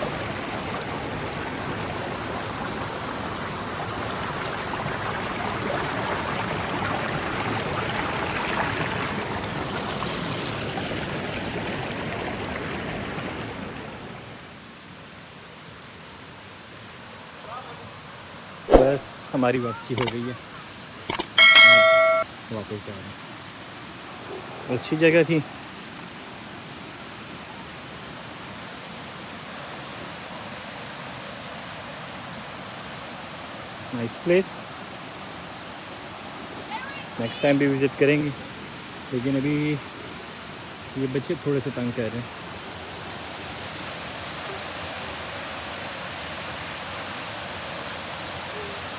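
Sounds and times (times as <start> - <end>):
waterfall rushing: 23.3 - 48.9.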